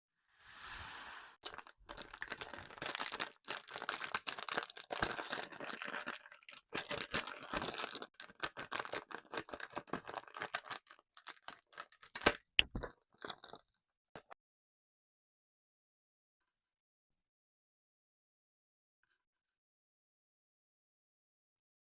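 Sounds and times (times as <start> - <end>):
hard candy crunching and crackling: 1.4 - 13.6.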